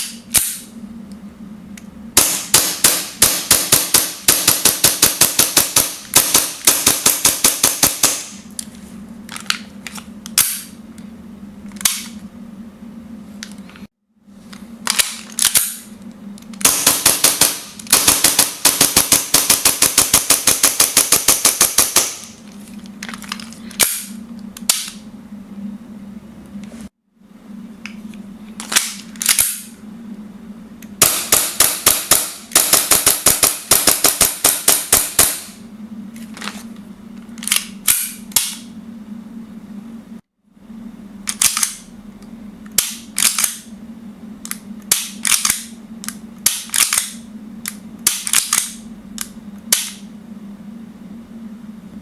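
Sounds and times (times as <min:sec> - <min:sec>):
airsoft pistol firing: 0:02.2 - 0:08.3, 0:16.6 - 0:22.3, 0:31.0 - 0:35.5.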